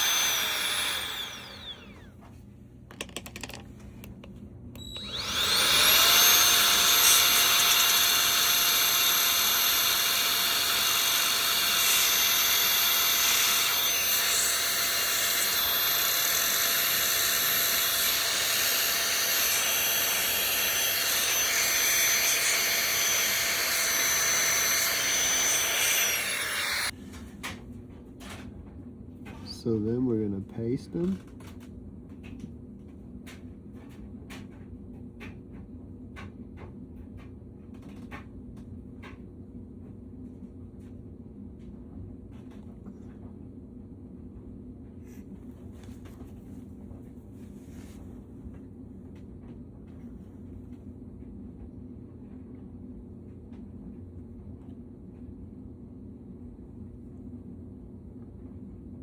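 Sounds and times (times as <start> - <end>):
electric air blower whining: 0.0 - 2.3, 4.8 - 27.0.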